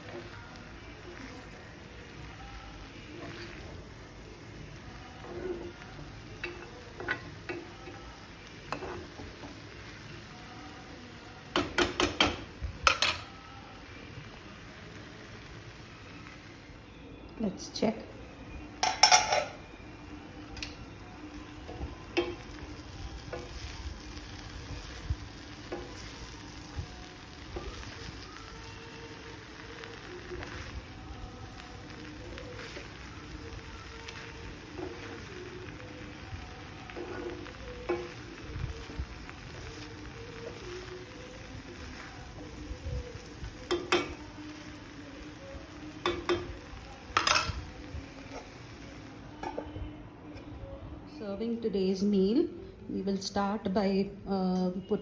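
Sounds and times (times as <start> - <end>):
food sizzling in a pan: 0.0 - 49.7
metal spoon clinking on pot: 11.6 - 13.3, 18.8 - 19.7, 43.7 - 44.2, 47.2 - 47.6.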